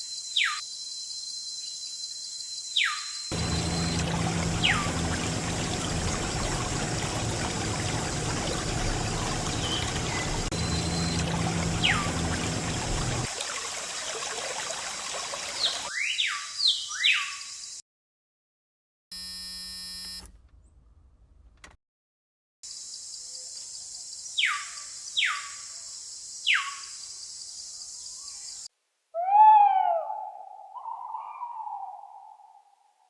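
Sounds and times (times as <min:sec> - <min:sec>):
low rumble: 0:03.3 - 0:13.3
water running and trickling: 0:03.3 - 0:15.9.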